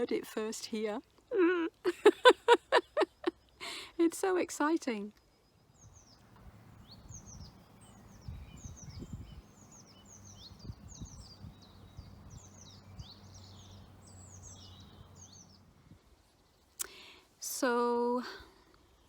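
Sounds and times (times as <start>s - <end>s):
small bird chirping: 4.3s - 17.0s.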